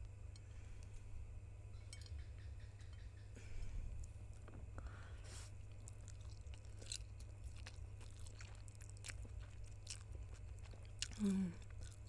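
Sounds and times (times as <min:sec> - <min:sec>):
wet chewing and smacking: 0:05.6 - 0:12.0.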